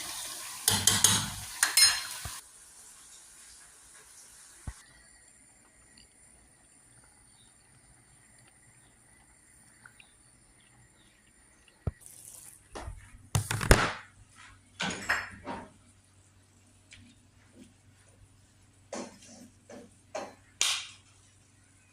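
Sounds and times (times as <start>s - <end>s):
pots and utensils clattering: 0.1s - 2.4s, 14.8s - 15.8s, 18.9s - 20.5s.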